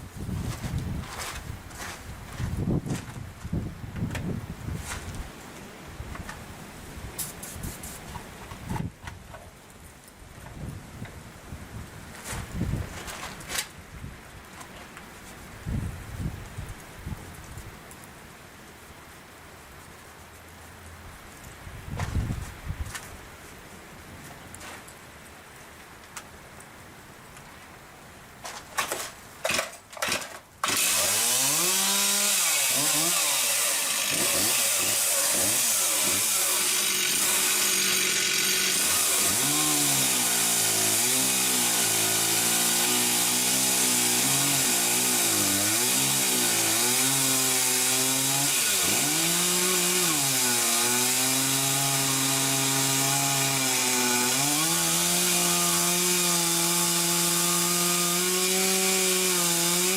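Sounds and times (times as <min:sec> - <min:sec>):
chainsaw starting and revving: 0:29.5 - 0:59.9.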